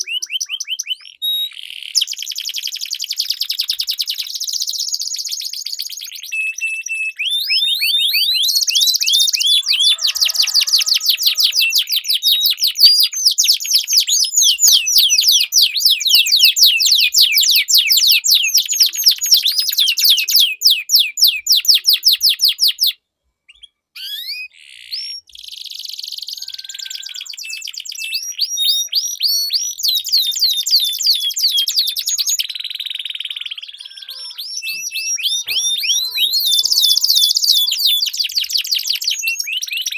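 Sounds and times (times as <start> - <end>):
canaries singing trills: 0.0 - 39.9.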